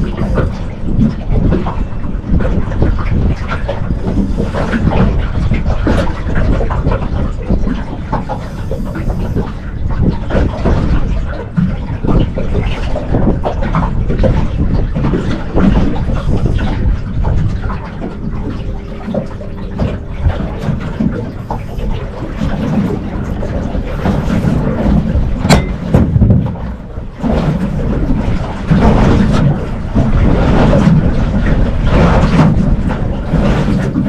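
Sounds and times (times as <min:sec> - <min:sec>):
low rumble: 0:00.0 - 0:33.5
boat knocks and rattles: 0:00.0 - 0:34.0
wind buffeting microphone: 0:00.0 - 0:34.0.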